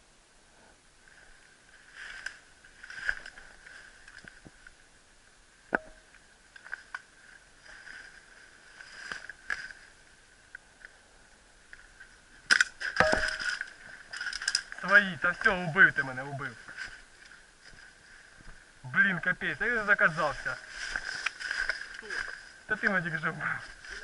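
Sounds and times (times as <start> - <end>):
rustling brush: 1.1 - 4.5, 6.7 - 10.0, 12.8 - 18.7, 19.4 - 24.0
brush snapping: 12.5 - 15.0, 20.9 - 22.4.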